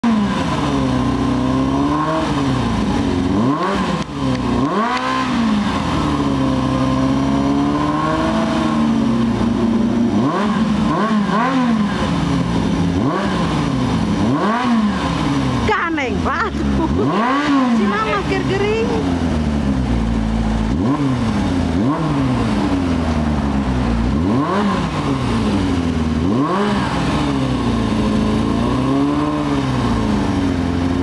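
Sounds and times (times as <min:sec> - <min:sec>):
motorcycle engine revving: 0:00.0 - 0:31.0.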